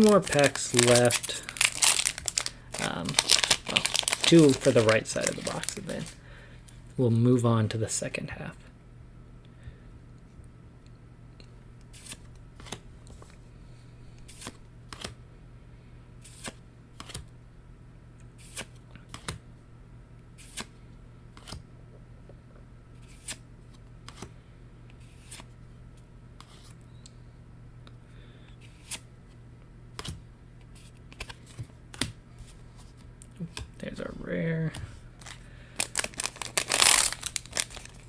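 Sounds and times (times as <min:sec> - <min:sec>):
trading cards clicking: 0:00.0 - 0:06.2.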